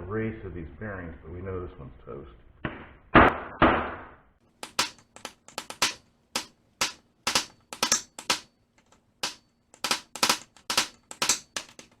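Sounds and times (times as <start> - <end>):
hammer striking metal punch: 4.6 - 8.5, 9.2 - 12.0.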